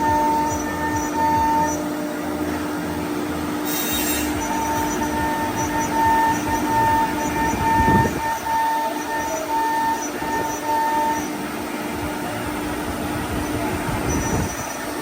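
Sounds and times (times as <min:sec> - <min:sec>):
rough cutting noise: 0:00.0 - 0:11.4
router spindle whine: 0:00.0 - 0:15.0.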